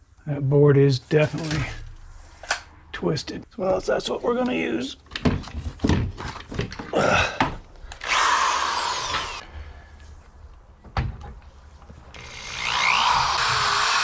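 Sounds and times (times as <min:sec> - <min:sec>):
cordless drill whining: 0:07.9 - 0:09.4, 0:12.2 - 0:14.0.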